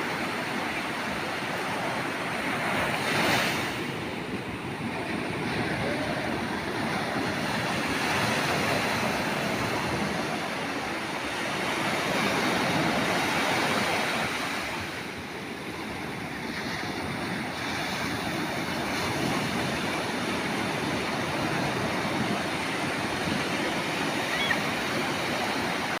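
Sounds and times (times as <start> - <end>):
ocean surf breaking on beach: 0.0 - 26.0.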